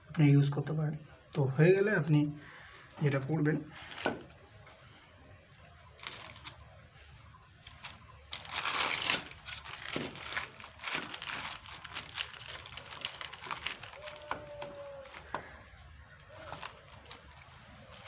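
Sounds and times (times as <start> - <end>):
crinkling and scraping: 3.7 - 4.9, 5.6 - 18.0.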